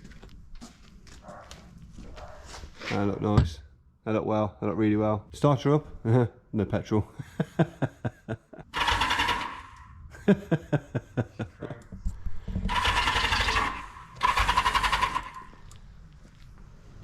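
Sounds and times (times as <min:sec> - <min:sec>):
engine catching in short bursts: 0:08.8 - 0:09.9, 0:12.7 - 0:15.6
motorcycle engine cranking on starter: 0:08.8 - 0:09.9, 0:12.7 - 0:15.6.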